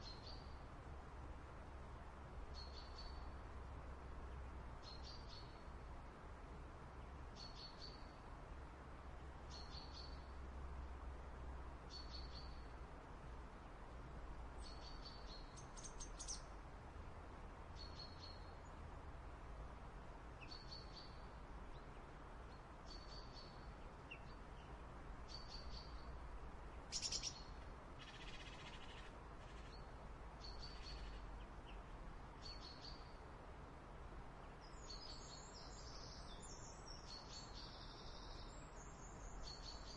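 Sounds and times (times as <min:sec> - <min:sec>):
faint background hiss: 0:00.0 - 0:39.9
small bird high call: 0:26.9 - 0:29.8, 0:30.4 - 0:31.3.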